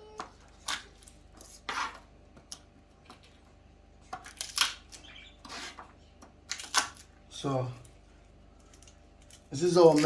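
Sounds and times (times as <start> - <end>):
utensil scraping: 0.6 - 2.2, 5.0 - 6.0.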